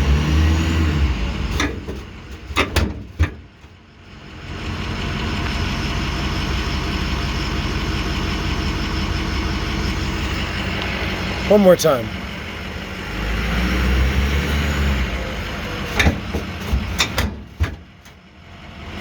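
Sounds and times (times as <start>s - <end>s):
diesel engine running: 0.0s - 19.0s
trailer hitch popping: 1.5s - 3.8s, 15.7s - 18.2s.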